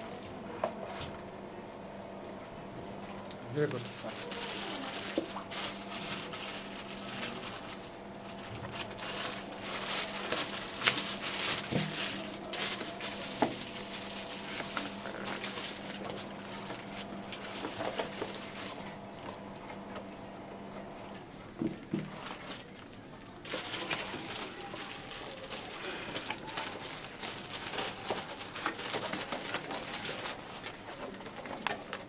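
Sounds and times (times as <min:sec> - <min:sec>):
steady low hum: 0:00.0 - 0:32.0
packaging rustling and crinkling: 0:03.6 - 0:19.0, 0:21.9 - 0:32.0.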